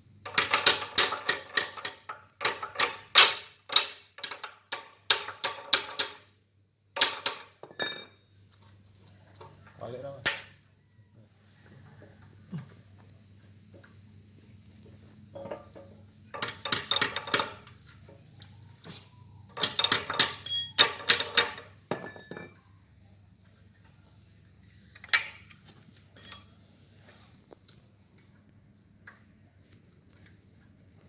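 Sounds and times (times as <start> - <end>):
metal tools clinking and rattling: 7.0 - 8.2, 15.4 - 22.6, 24.9 - 26.7.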